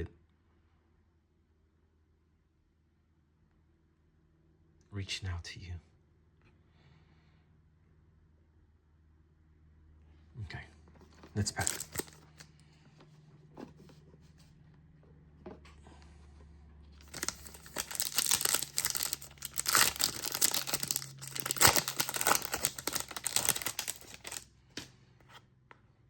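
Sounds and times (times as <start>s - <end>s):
wrapper tearing and crinkling: 11.4s - 12.4s, 17.0s - 24.4s.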